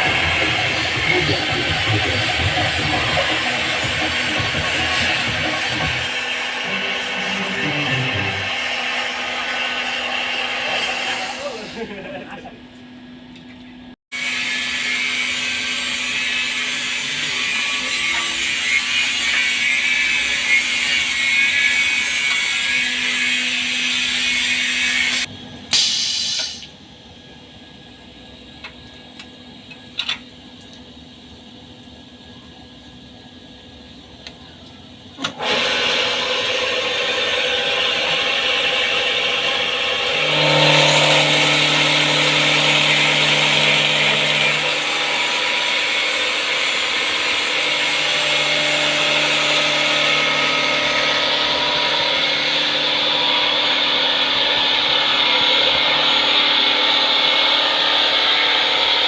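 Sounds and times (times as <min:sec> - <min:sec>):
low machine hum: 0:00.0 - 0:09.8
lathe cutter rasping into wood: 0:00.0 - 0:11.0, 0:35.4 - 0:59.0.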